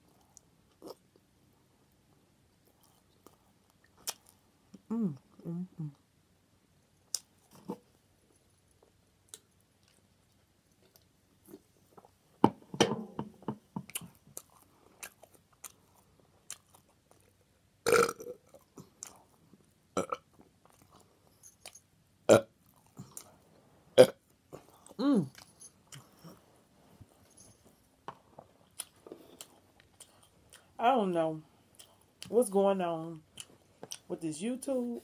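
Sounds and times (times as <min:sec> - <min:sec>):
person chewing: 0:00.1 - 0:01.2, 0:02.6 - 0:04.4, 0:08.6 - 0:11.7, 0:13.9 - 0:19.3, 0:28.6 - 0:30.8, 0:33.3 - 0:34.1
person burping: 0:17.9 - 0:18.4, 0:20.0 - 0:20.2, 0:22.3 - 0:22.5, 0:24.0 - 0:24.2.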